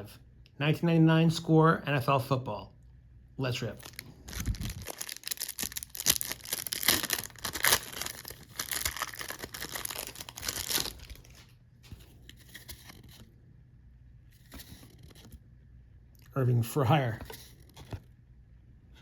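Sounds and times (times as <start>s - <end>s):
wrapper tearing and crinkling: 3.8s - 11.5s.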